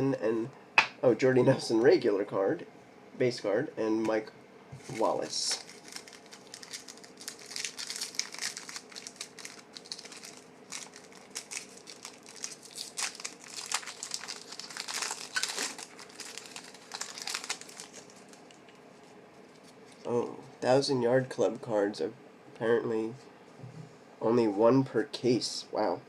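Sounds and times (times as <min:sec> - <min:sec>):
plastic wrapper crinkling: 0:04.8 - 0:20.1.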